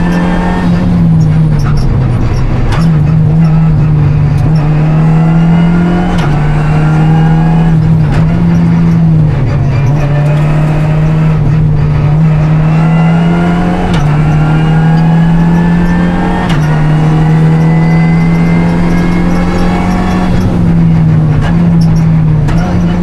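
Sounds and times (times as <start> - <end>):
car engine revving hard: 0.0 - 23.0
gearshift click: 13.8 - 22.9.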